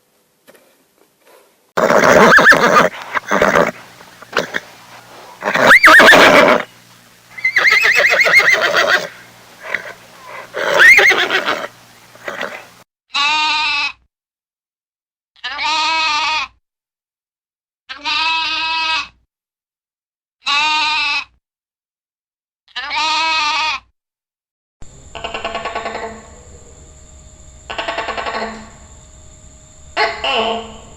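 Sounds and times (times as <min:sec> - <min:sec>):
animal bleating: 0:01.8 - 0:06.7, 0:07.4 - 0:14.0, 0:15.4 - 0:16.6, 0:17.9 - 0:19.1, 0:20.4 - 0:21.4, 0:22.7 - 0:23.8, 0:25.1 - 0:26.5
horse neighing: 0:01.8 - 0:06.8, 0:07.4 - 0:12.8, 0:25.0 - 0:26.5.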